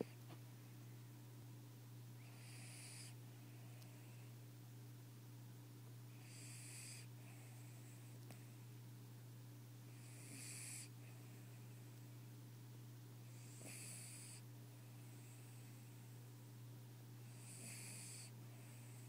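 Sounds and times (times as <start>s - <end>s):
dog snoring: 2.2s - 3.2s, 6.1s - 7.8s, 9.9s - 11.0s, 13.3s - 14.4s, 17.2s - 19.0s.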